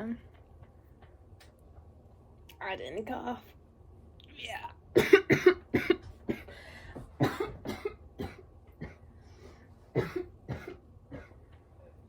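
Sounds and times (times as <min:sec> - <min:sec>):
woman coughing: 0:04.9 - 0:06.5, 0:07.2 - 0:09.0, 0:09.9 - 0:11.4.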